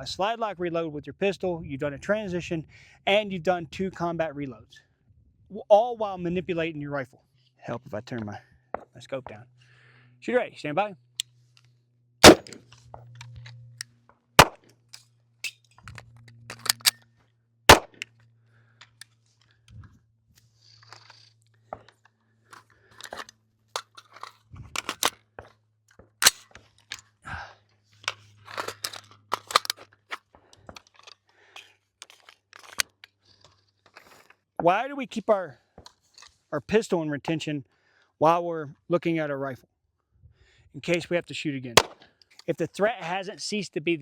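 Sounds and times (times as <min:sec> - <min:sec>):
gun magazine and slide clicks: 0:12.2 - 0:12.6, 0:15.4 - 0:17.0, 0:17.7 - 0:18.0, 0:22.6 - 0:25.2, 0:26.2 - 0:26.6, 0:28.1 - 0:29.8, 0:41.8 - 0:42.5
sharp gunshots: 0:12.2 - 0:12.6, 0:17.7 - 0:18.0, 0:41.8 - 0:42.0.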